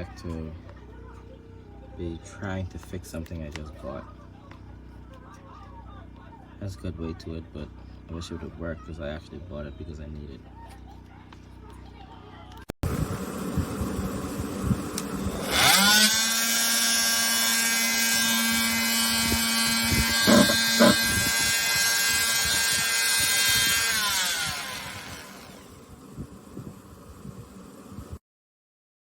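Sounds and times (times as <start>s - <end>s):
multitool motor buzzing whine: 12.8s - 28.2s.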